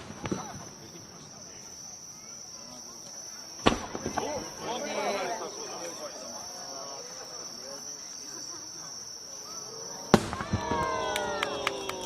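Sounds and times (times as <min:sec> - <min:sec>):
firework bang: 0:00.0 - 0:01.8, 0:03.6 - 0:04.8, 0:10.1 - 0:11.5
firework crackling pops: 0:00.0 - 0:04.8, 0:09.3 - 0:12.0
faint crowd chatter: 0:00.0 - 0:12.0
insects trilling: 0:00.0 - 0:12.0.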